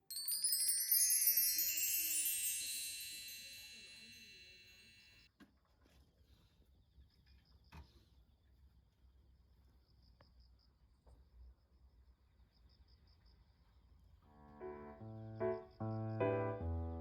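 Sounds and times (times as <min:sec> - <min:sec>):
high chime tones ringing: 0:00.0 - 0:05.3.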